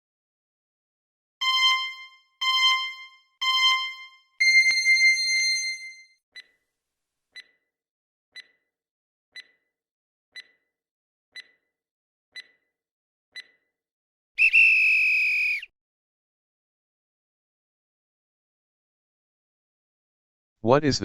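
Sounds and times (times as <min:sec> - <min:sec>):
long loud timer tone: 0:01.4 - 0:06.1
short timer beeps: 0:01.4 - 0:06.5, 0:11.4 - 0:11.6, 0:13.4 - 0:13.6.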